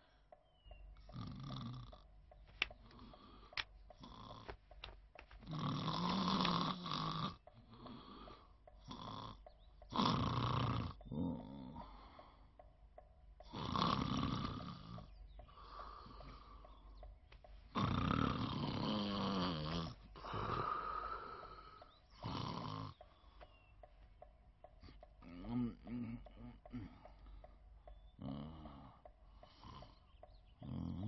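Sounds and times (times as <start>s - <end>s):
quiet breaths: 0.0s - 31.0s
sharp clicks: 0.3s - 11.2s
man snoring: 1.1s - 2.0s, 2.7s - 4.6s, 5.4s - 12.2s, 13.4s - 16.6s, 17.7s - 23.0s, 25.2s - 27.2s, 28.2s - 31.0s.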